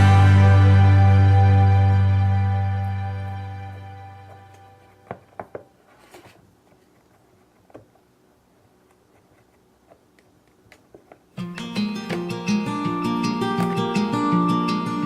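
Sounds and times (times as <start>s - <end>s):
music: 0.0s - 5.0s, 11.4s - 15.0s.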